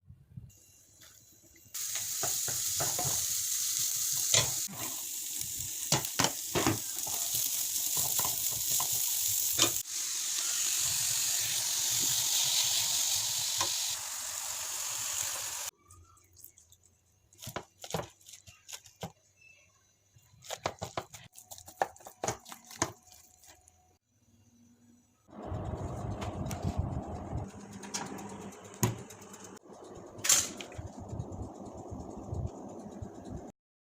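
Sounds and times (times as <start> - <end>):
food sizzling in a pan: 1.6 - 15.8.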